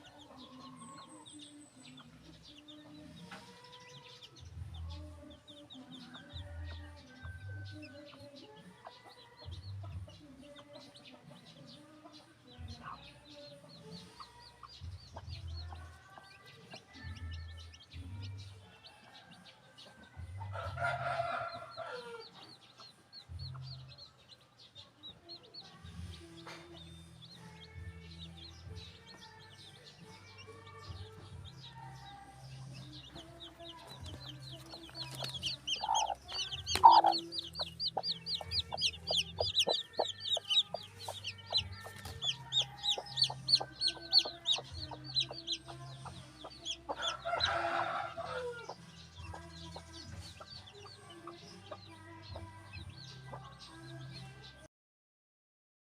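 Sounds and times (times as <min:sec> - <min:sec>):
chicks peeping: 0:00.0 - 0:54.5
loud clucks: 0:34.0 - 0:45.6
rooster crowing: 0:47.0 - 0:48.7.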